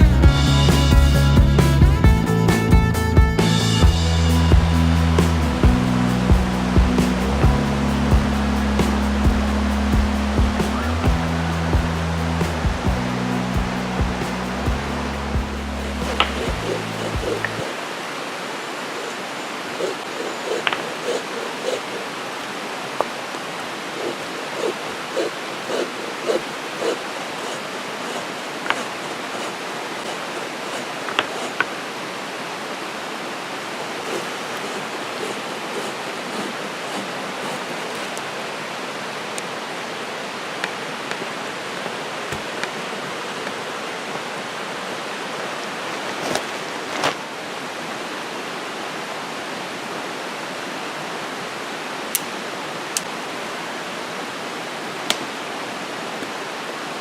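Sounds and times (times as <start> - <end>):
flowing creek water: 3.5 - 57.0.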